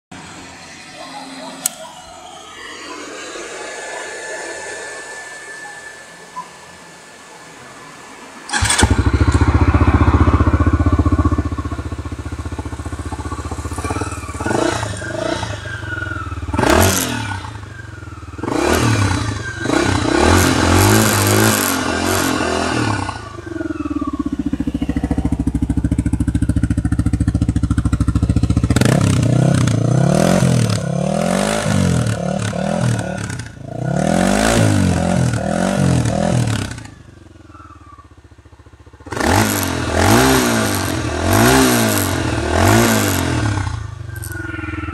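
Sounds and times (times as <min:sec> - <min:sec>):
motorcycle engine starting and revving: 0:08.4 - 0:44.9.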